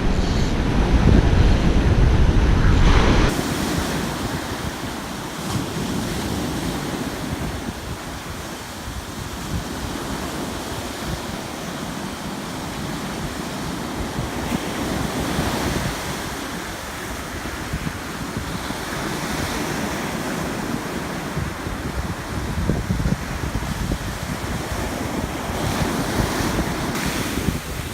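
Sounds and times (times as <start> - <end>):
wind buffeting microphone: 0.0 - 11.6, 20.9 - 27.9
ocean surf washing onto beach: 0.0 - 27.9.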